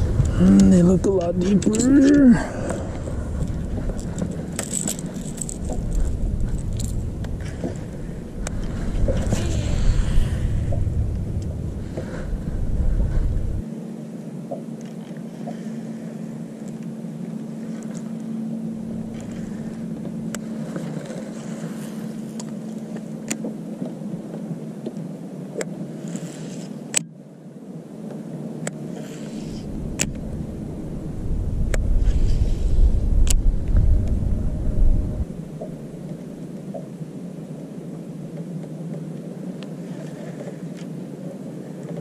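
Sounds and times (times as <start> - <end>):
wind rumble on microphone: 0.0 - 13.7, 17.2 - 22.2, 28.3 - 42.0
boat motor hum: 0.0 - 25.8, 28.5 - 37.4.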